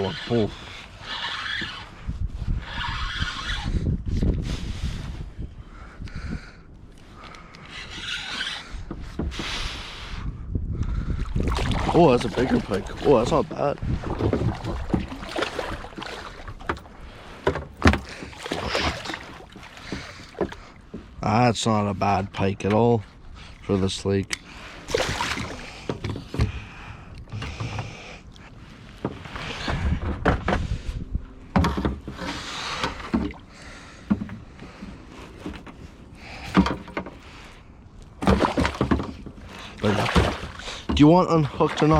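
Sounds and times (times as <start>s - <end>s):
knocks and scraping on kayak hull: 7.8s - 9.7s, 11.3s - 21.2s, 25.0s - 26.7s, 27.3s - 28.1s, 28.8s - 37.4s, 38.1s - 41.9s
water splashing: 11.2s - 20.8s, 24.8s - 26.0s, 38.2s - 41.9s.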